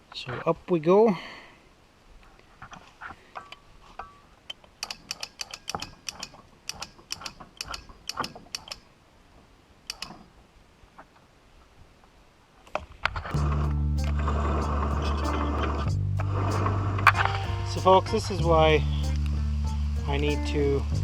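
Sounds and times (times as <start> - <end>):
hand winch ratcheting clicks: 4.5 - 8.9, 9.9 - 10.2.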